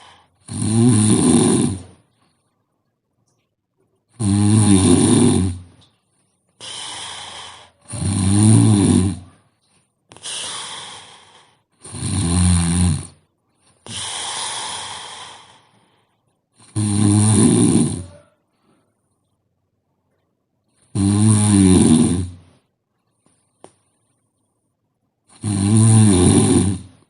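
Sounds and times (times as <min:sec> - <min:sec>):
breathy breaths: 0:00.0 - 0:00.4, 0:06.2 - 0:08.0, 0:09.2 - 0:11.9, 0:13.5 - 0:16.4
person snoring heavily: 0:00.0 - 0:02.0, 0:04.2 - 0:05.7, 0:06.6 - 0:09.3, 0:10.1 - 0:13.2, 0:13.8 - 0:15.8, 0:16.6 - 0:18.2, 0:20.9 - 0:22.5, 0:25.3 - 0:27.0.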